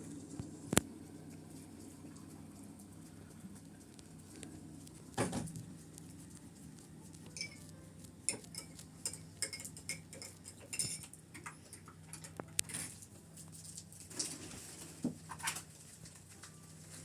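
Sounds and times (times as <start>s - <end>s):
faint steady hum: 0.0s - 17.0s
crockery and cutlery clinking: 8.3s - 12.8s.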